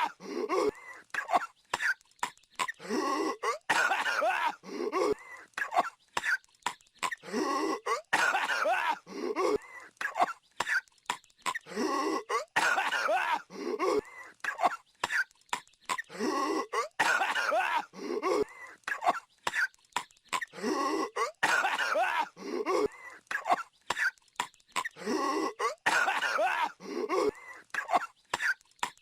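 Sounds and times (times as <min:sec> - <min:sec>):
cartoon character coughing: 0:07.8 - 0:10.8, 0:15.9 - 0:19.6, 0:20.4 - 0:23.6, 0:24.8 - 0:28.6.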